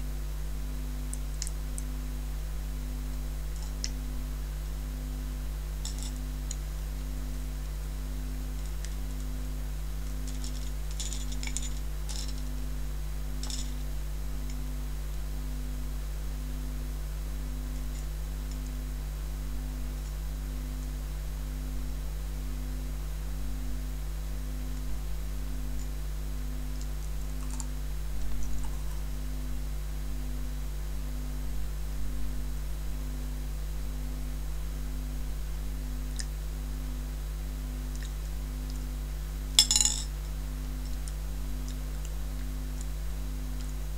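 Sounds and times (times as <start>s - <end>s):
pulsing low hum: 0.0s - 43.9s
chopsticks clicking and tapping: 39.6s - 40.1s.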